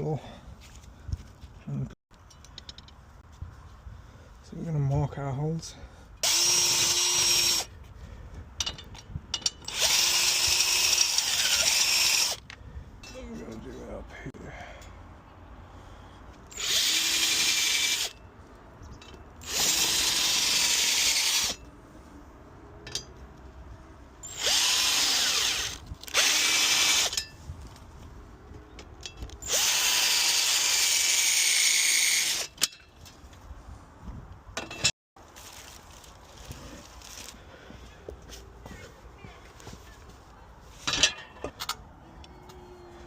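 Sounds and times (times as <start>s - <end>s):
power drill boring into wall: 6.2s - 7.7s, 9.7s - 12.4s, 16.5s - 18.1s, 19.4s - 21.6s, 24.3s - 27.2s, 29.4s - 32.5s.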